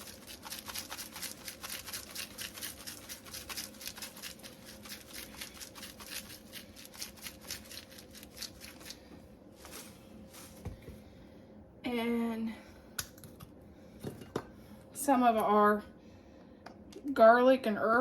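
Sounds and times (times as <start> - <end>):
seasoning shaker rattling: 0.0 - 9.0
faint steady hum: 0.0 - 18.0.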